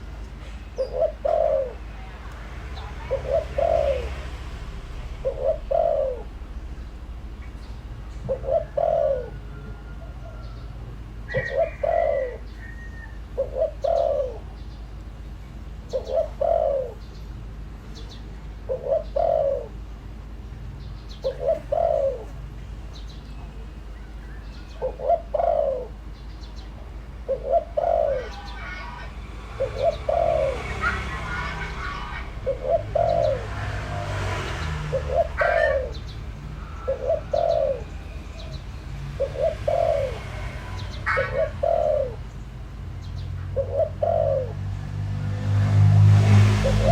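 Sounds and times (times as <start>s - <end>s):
dove cooing: 0.0s - 14.7s, 15.9s - 17.2s, 18.0s - 20.0s, 20.9s - 46.9s
small birds chirping: 0.0s - 45.6s.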